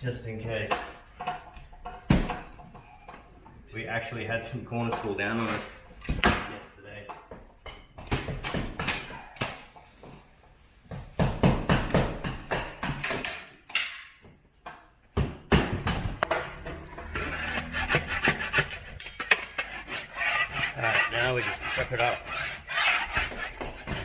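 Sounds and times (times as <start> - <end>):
hand tool scraping plaster: 16.8 - 24.0.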